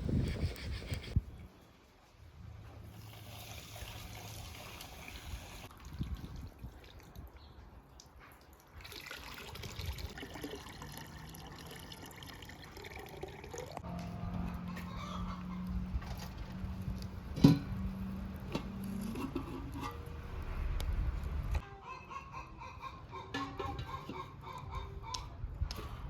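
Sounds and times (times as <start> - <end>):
water trickling and dripping: 2.9 - 13.8.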